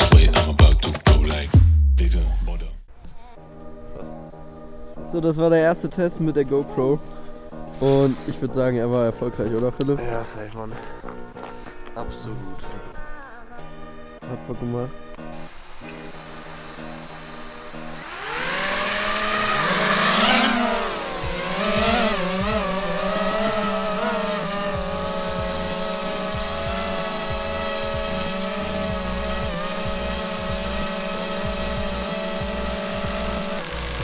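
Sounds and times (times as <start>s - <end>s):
drone motors whining: 7.8s - 8.4s, 15.3s - 34.0s.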